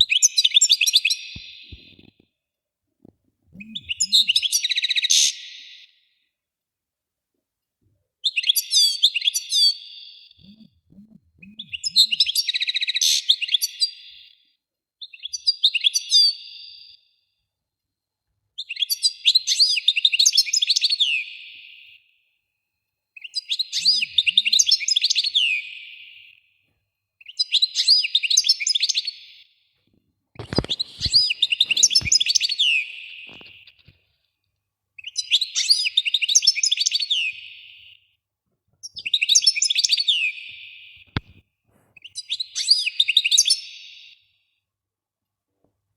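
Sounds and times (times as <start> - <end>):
songbird warbling and trilling: 3.5 - 5.4, 10.4 - 13.6, 30.4 - 33.8.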